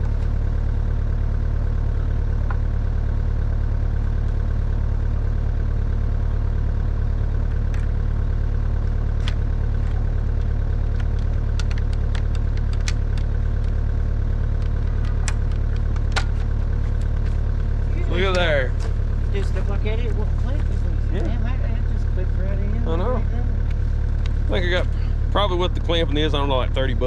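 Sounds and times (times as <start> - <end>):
diesel excavator engine idling: 0.0 - 27.0
sharp metallic clicks: 10.4 - 13.8.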